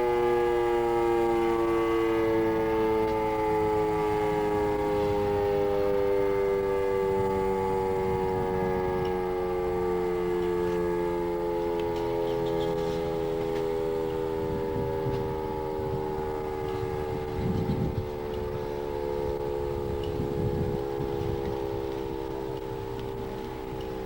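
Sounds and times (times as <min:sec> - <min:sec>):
warning siren winding down: 0:00.0 - 0:24.0.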